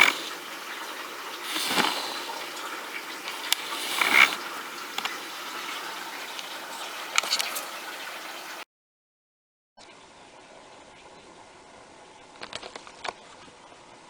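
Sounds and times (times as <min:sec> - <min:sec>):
drops ticking: 0:00.0 - 0:08.4
splashing water: 0:00.0 - 0:08.6.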